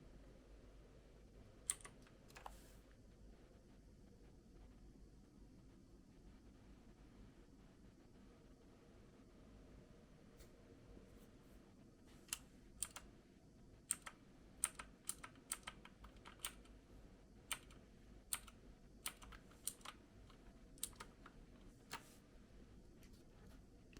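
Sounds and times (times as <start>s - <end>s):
mechanical keyboard key clicks: 1.7s - 2.6s, 12.3s - 13.0s, 13.9s - 16.7s, 17.5s - 22.1s.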